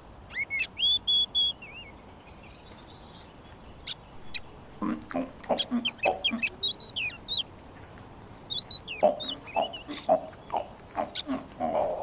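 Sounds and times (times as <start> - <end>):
chickens clucking: 3.9 - 12.0.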